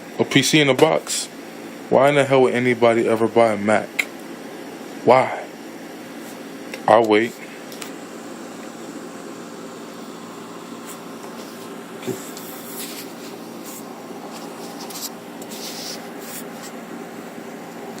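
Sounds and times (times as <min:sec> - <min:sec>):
steady room hum: 0:00.0 - 0:18.0
rustling and scraping handling: 0:10.8 - 0:16.8.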